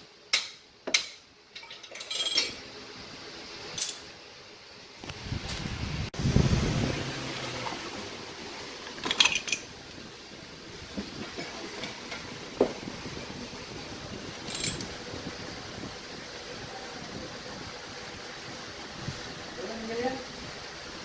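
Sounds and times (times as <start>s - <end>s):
steady background hum: 0.0s - 21.0s
metallic clinks and clicks: 14.4s - 14.9s.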